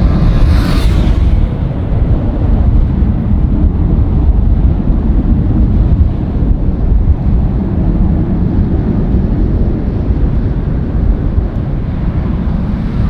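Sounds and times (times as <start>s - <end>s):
jet engines rumbling: 0.0s - 13.0s.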